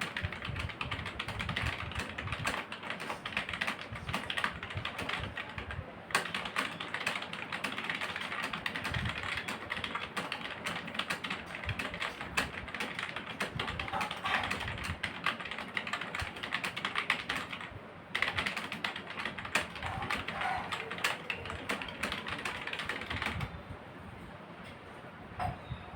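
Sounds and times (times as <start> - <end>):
fast typing on keyboard: 0.0 - 23.5.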